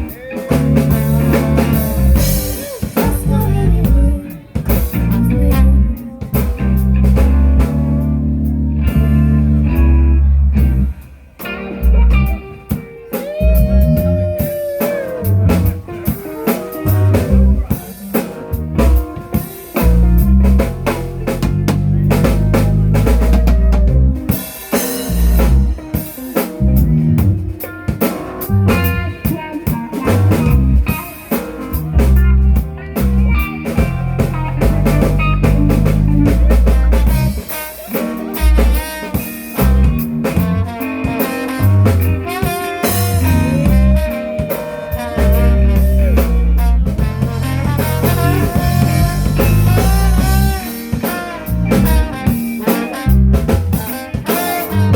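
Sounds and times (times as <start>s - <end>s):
band playing: 0.0s - 54.9s
bass line: 0.0s - 54.9s
snare and bass drum hits: 37.9s - 54.9s.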